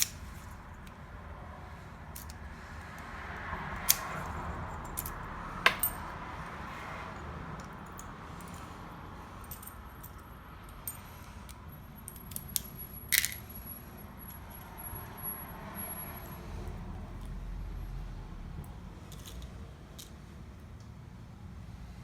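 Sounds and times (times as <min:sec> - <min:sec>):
metal lock parts clicking: 0:00.0 - 0:01.0, 0:02.2 - 0:02.4, 0:03.8 - 0:06.2, 0:09.4 - 0:13.7.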